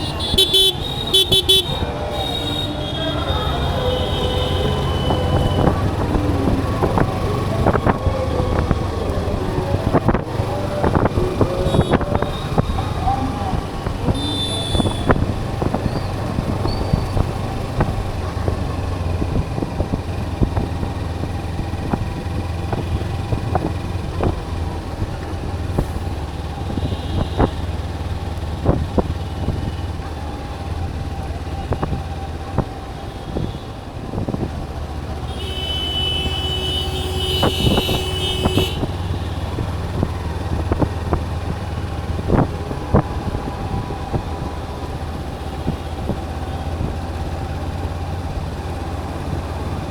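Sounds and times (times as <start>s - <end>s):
vehicle horn: 0.0s - 6.0s, 11.6s - 12.6s, 14.1s - 15.7s, 26.7s - 27.6s, 35.3s - 39.6s
motorcycle engine running: 0.0s - 32.8s.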